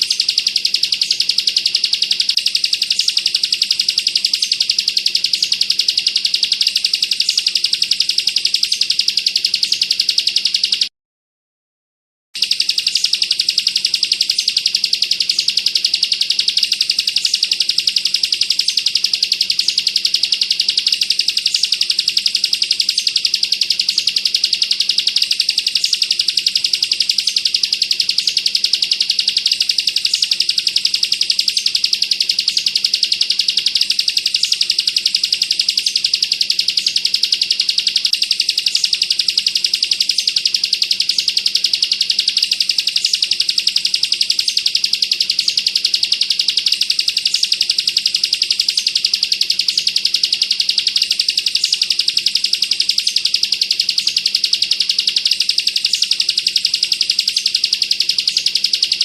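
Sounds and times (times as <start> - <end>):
bird rapid trilling: 12.4 - 59.0.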